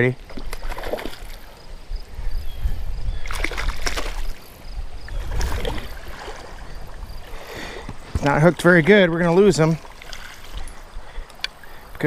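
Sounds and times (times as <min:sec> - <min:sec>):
water splashing: 0:00.2 - 0:01.6, 0:03.2 - 0:11.3
wind buffeting microphone: 0:01.6 - 0:11.3.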